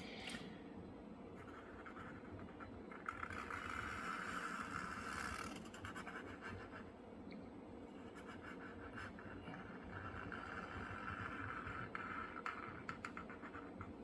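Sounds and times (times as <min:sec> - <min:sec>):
pencil strokes on paper: 0:08.0 - 0:13.9.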